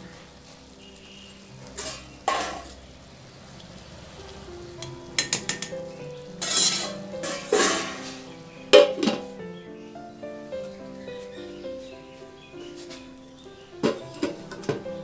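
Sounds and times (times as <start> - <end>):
faint background music: 0.0 - 15.0
metal utensils clattering in a pot: 1.6 - 2.9, 5.2 - 5.8, 6.4 - 9.4, 13.8 - 14.8.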